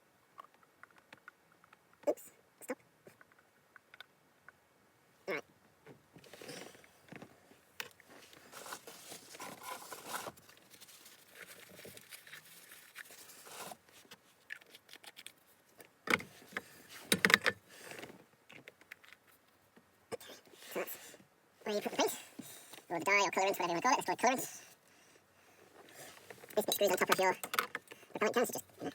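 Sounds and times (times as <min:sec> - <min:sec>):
plastic parts clicking and clattering: 0:06.2 - 0:19.4, 0:26.2 - 0:28.0
small parts scraping and rustling: 0:06.2 - 0:19.7.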